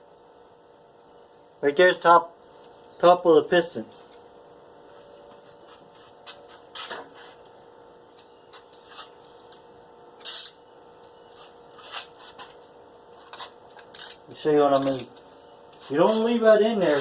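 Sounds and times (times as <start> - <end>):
faint steady hum: 0.0 - 17.0
tools scraping on engine: 8.5 - 9.2, 11.2 - 12.6, 13.2 - 17.0.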